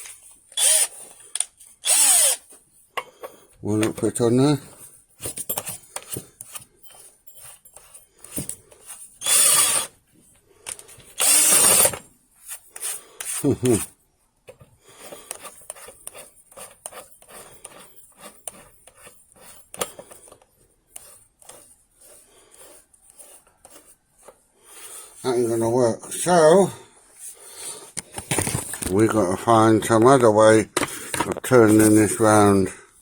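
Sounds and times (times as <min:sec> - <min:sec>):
metal tools clinking and scraping: 0:02.9 - 0:08.8.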